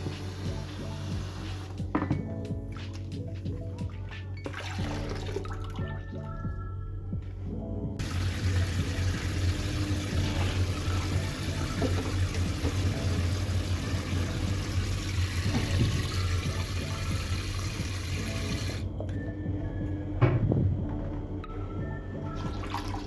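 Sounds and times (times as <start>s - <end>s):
running water from a tap: 0.0s - 1.7s, 8.0s - 18.9s, 22.4s - 23.0s.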